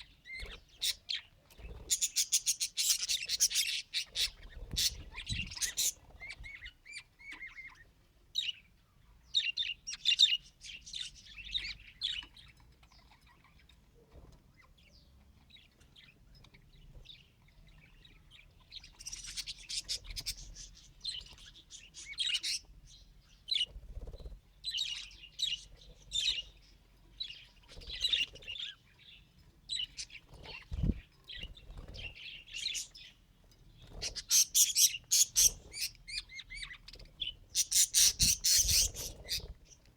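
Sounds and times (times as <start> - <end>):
budgerigar chattering and warbling: 0.3 - 7.8, 34.0 - 39.5.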